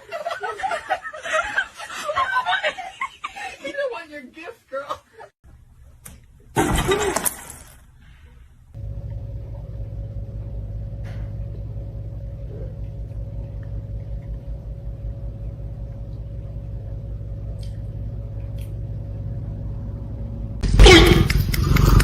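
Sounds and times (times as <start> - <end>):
faint hum: 7.9 - 22.0.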